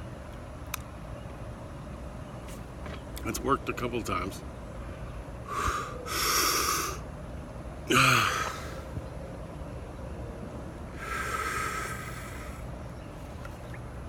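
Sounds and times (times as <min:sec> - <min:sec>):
breathing: 0:04.8 - 0:07.0, 0:11.0 - 0:12.6
man hiccuping: 0:07.9 - 0:08.7.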